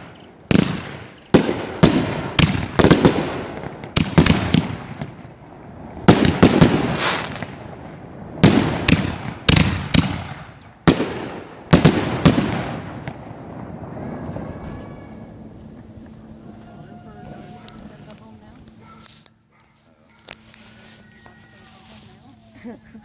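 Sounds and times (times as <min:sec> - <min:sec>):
fireworks bangs echoing: 0:00.0 - 0:18.0.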